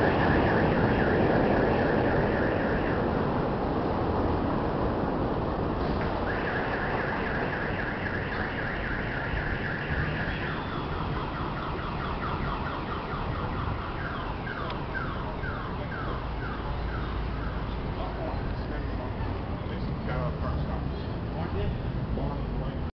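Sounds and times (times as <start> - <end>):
car alarm: 0.0 - 3.1, 6.1 - 17.9.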